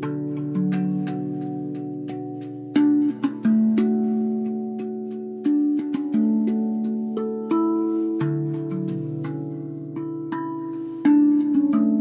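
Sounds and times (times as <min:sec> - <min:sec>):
handpan melody: 0:00.0 - 0:12.0.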